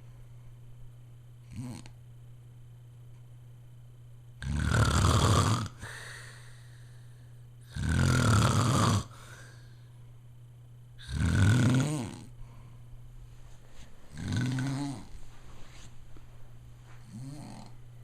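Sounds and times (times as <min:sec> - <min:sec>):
man snoring loudly: 0:01.5 - 0:01.9, 0:04.4 - 0:06.0, 0:07.6 - 0:09.2, 0:11.0 - 0:12.3, 0:14.1 - 0:15.1, 0:17.1 - 0:17.7.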